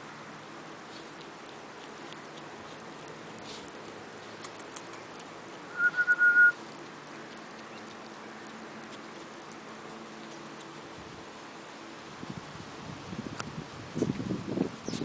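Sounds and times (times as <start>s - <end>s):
faint light ticks: 1.0s - 5.6s.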